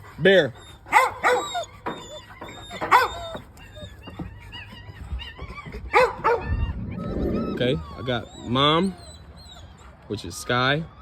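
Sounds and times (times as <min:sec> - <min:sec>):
dog whining: 0:00.4 - 0:11.0
dogs barking: 0:00.7 - 0:08.9.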